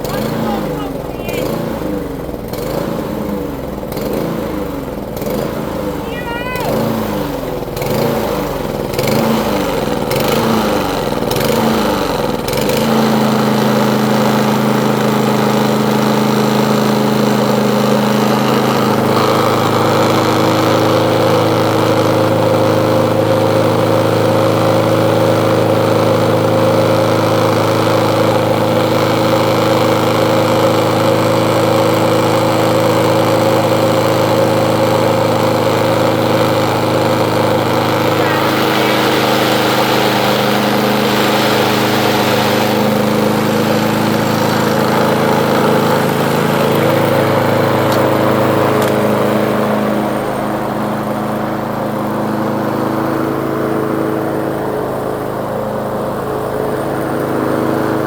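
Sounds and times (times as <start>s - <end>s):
lawn mower engine running: 0.0s - 58.0s.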